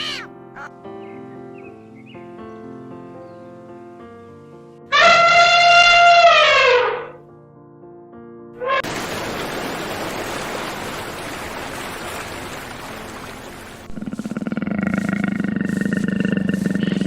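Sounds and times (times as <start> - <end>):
big cat roaring: 13.9 - 17.0.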